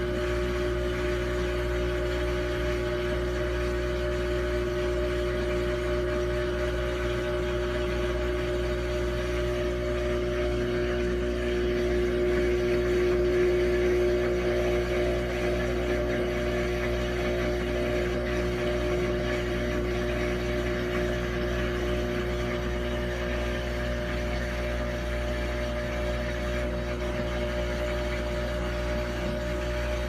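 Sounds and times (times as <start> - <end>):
washing machine droning hum: 0.0 - 30.0.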